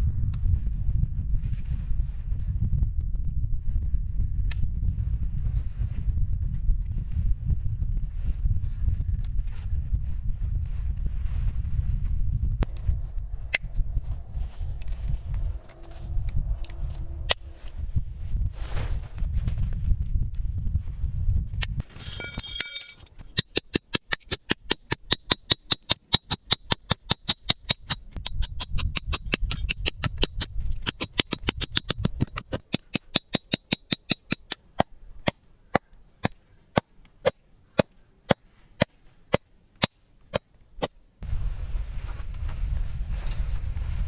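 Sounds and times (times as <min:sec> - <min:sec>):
short metallic ring: 0:22.0 - 0:23.1.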